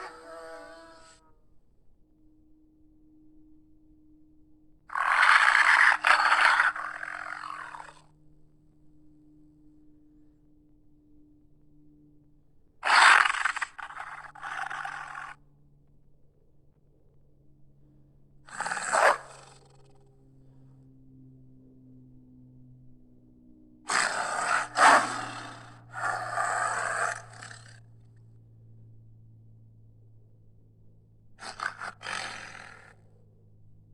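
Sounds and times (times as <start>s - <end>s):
harsh raspy creature roar: 0.0s - 1.2s, 4.9s - 8.1s, 12.8s - 15.4s, 18.5s - 19.9s, 23.9s - 27.8s, 31.4s - 33.0s
rough beast calls: 0.0s - 1.2s, 4.9s - 8.1s, 12.8s - 15.4s, 18.5s - 20.0s, 23.9s - 27.9s, 31.4s - 33.0s
faint steady hum: 0.0s - 33.9s.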